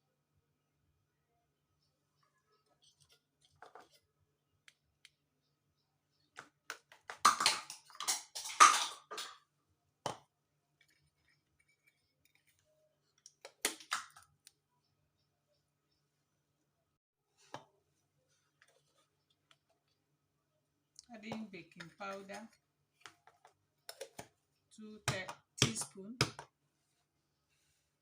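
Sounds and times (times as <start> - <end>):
container and spoon clinking: 7.2 - 9.4.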